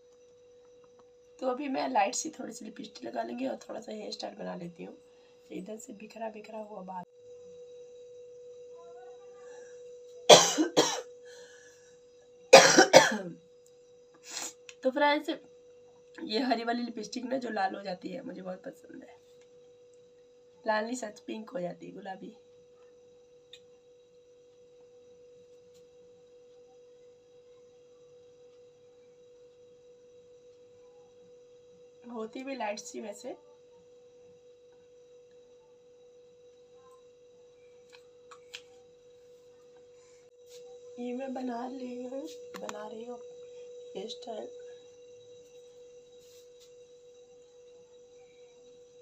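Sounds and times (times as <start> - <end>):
faint steady tone: 0.0 - 12.5, 14.8 - 49.0
faint steady hum: 0.0 - 49.0
woman coughing: 10.3 - 11.1, 12.5 - 13.4.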